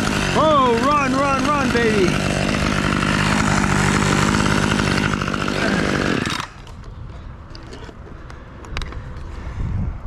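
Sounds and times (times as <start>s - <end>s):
chainsaw at full throttle: 0.0s - 6.7s.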